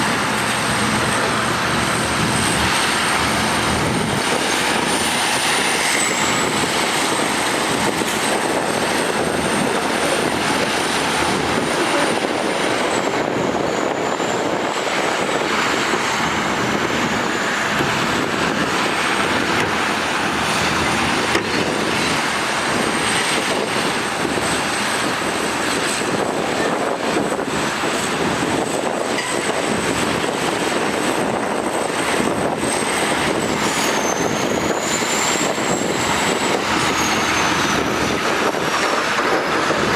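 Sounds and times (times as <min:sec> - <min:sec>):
heavy diesel machinery running: 0:00.0 - 0:39.9.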